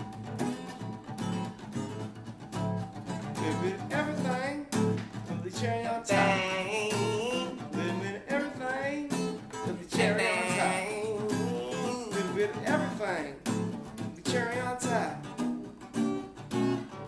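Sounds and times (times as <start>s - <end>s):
acoustic guitar strummed: 0.0s - 17.0s
person singing: 3.4s - 15.3s.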